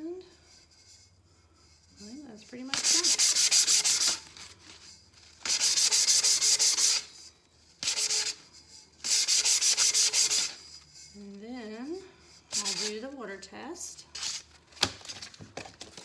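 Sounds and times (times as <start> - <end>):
sandpaper scuffing metal: 1.8 - 11.3, 12.4 - 13.2, 14.1 - 14.6.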